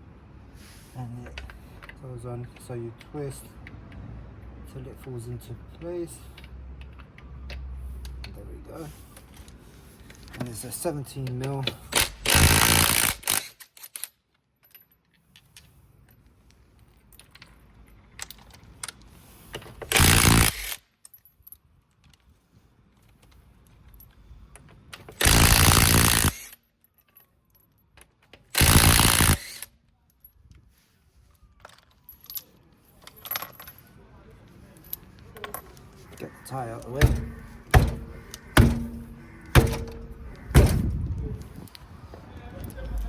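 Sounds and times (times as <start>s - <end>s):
impact wrench running: 12.0s - 13.4s, 19.9s - 20.7s, 25.2s - 26.5s, 28.6s - 29.7s, 37.0s - 40.8s
metallic clinks of bolts: 31.6s - 33.9s, 34.8s - 40.8s.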